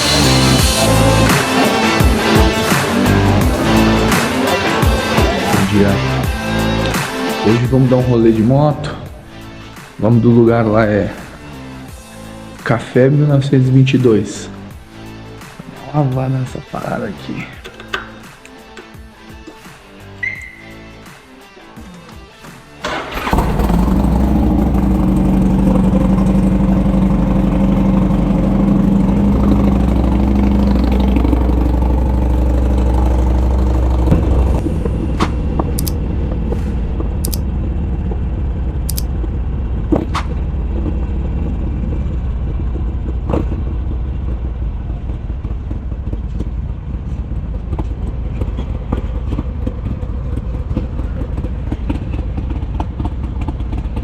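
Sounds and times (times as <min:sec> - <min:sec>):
motorcycle engine running: 0:23.1 - 0:54.0
sharp clicks: 0:35.6 - 0:36.0, 0:37.1 - 0:37.5, 0:38.8 - 0:39.1.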